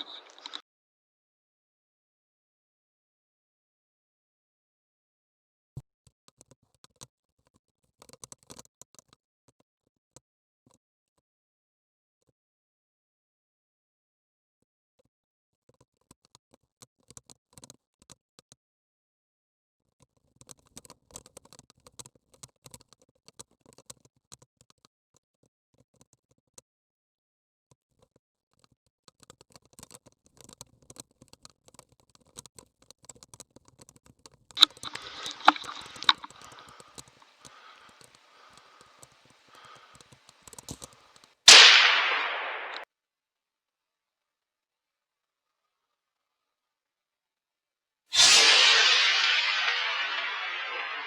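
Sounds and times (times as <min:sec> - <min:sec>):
faint clicks: 0:00.0 - 0:00.6, 0:34.6 - 0:42.8
sharp cracks with rustling: 0:00.0 - 0:00.6, 0:34.6 - 0:37.0, 0:41.5 - 0:42.8, 0:48.2 - 0:51.0
rifle shot with echo: 0:41.5 - 0:42.8.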